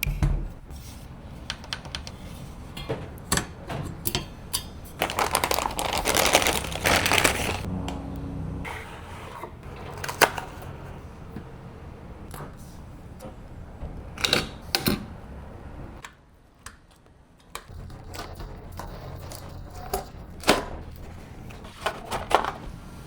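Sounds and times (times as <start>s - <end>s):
rustling and clattering: 4.7s - 7.7s.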